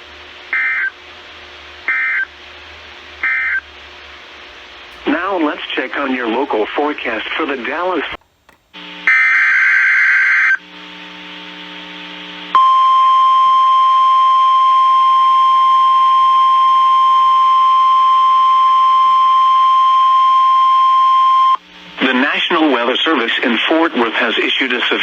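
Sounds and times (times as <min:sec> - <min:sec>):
faint hiss and hum: 0:00.0 - 0:25.0
steady warning alarm tone: 0:01.9 - 0:02.3, 0:03.2 - 0:03.6.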